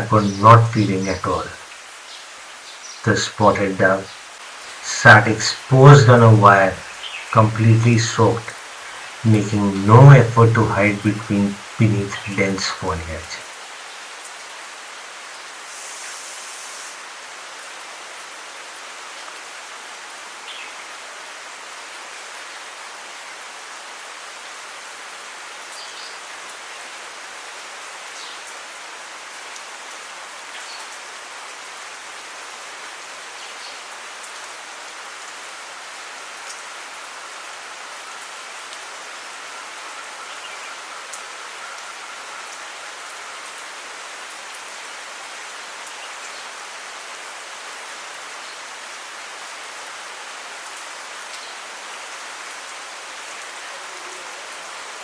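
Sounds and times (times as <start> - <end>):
heavy rain pattering: 0.0 - 22.9.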